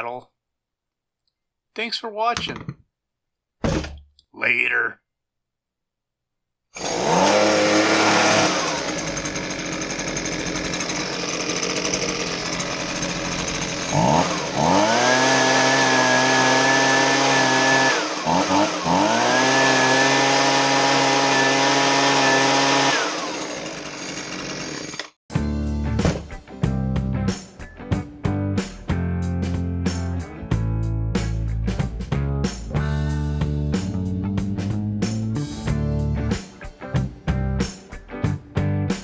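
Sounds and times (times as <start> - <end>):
leaf blower engine running: 6.8 - 26.3.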